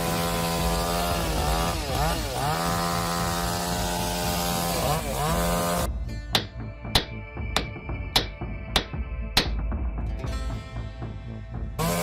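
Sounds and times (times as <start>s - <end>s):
chainsaw cutting at high revs: 0.0s - 5.9s, 11.8s - 12.0s.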